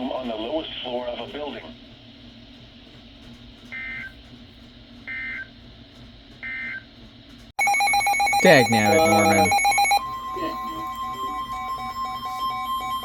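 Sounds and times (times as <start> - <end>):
two-tone digital data signal: 7.6 - 13.0.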